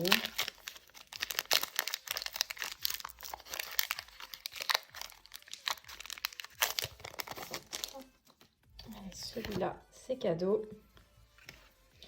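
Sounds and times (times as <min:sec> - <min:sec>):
foil wrapper crinkling and tearing: 0:00.0 - 0:08.5.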